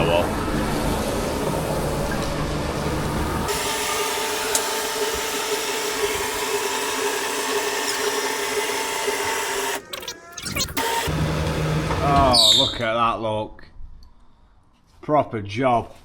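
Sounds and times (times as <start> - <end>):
hydraulic motor hum and whine: 0.0 - 12.6.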